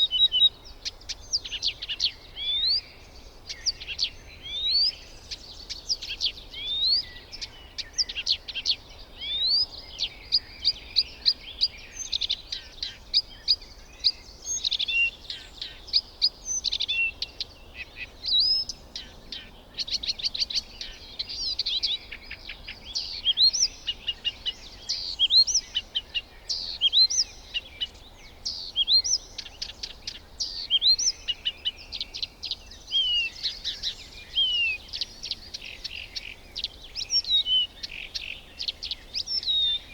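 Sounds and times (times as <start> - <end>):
birds chirping and whistling: 30.4 - 39.9.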